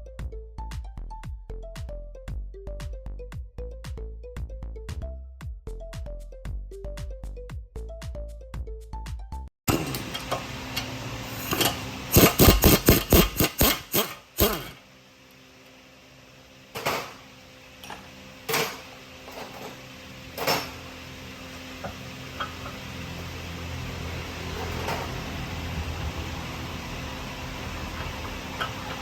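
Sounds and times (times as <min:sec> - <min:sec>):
low workshop hum: 0:09.7 - 0:29.0.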